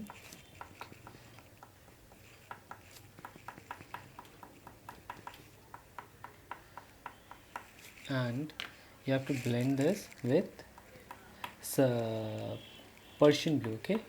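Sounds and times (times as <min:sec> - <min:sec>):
oil pastel ticking on paper: 0:00.0 - 0:07.8.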